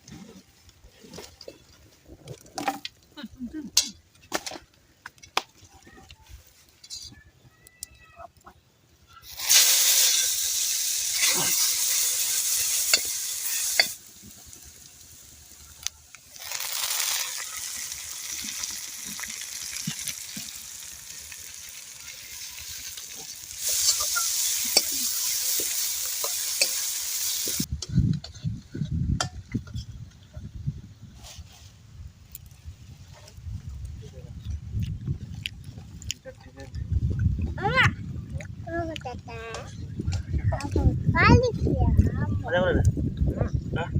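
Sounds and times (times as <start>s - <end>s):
food frying in hot oil: 9.2s - 27.7s
low thumps and rumbles: 33.4s - 43.9s.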